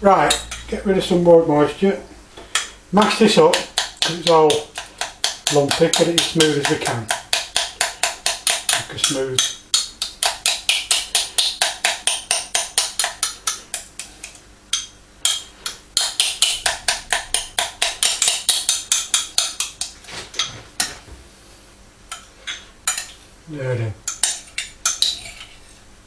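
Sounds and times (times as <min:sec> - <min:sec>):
utensil knocking against a bowl: 0:03.5 - 0:13.9, 0:14.7 - 0:21.0.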